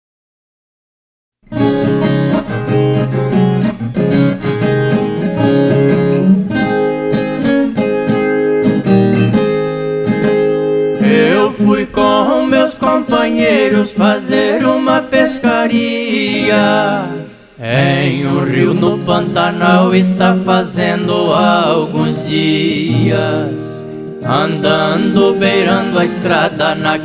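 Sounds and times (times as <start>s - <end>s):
guitar picking: 1.4s - 27.0s
person singing: 11.0s - 27.0s.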